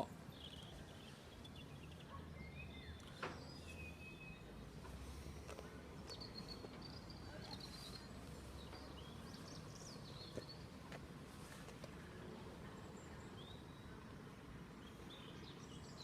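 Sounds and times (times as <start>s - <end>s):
birds twittering: 0.0s - 10.8s.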